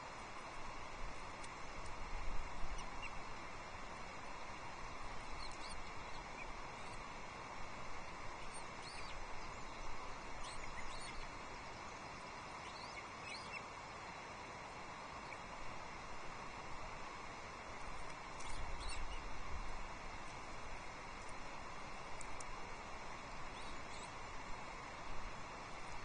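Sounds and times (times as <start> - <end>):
steady outdoor hiss: 0.0 - 26.0
faint high bird chirps: 5.3 - 7.0, 8.4 - 13.7, 18.4 - 19.3, 23.5 - 24.2.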